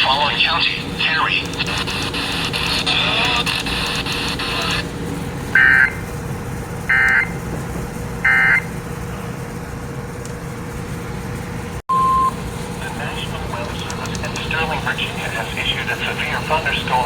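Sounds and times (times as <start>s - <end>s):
radio hiss: 0.0s - 4.9s, 12.8s - 17.0s
steady hum: 0.0s - 17.0s
digital data tone bursts: 5.6s - 6.0s, 6.9s - 7.4s, 8.3s - 8.7s, 11.9s - 12.4s.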